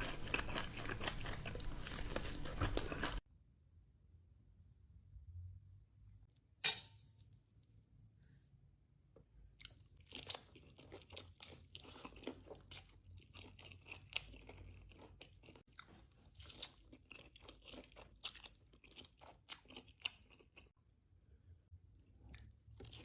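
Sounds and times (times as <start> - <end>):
crunching fried chicken: 0.0 - 3.2, 9.6 - 20.7.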